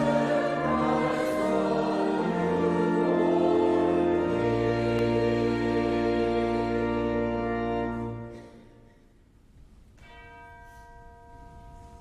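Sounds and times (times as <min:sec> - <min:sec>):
organ holding a chord: 0:00.0 - 0:08.6.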